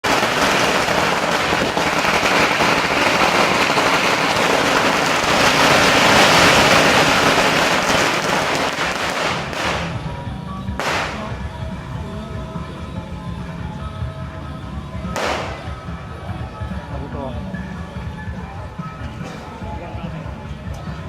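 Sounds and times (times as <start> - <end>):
firecrackers crackling: 0.0 - 12.2, 15.0 - 16.6.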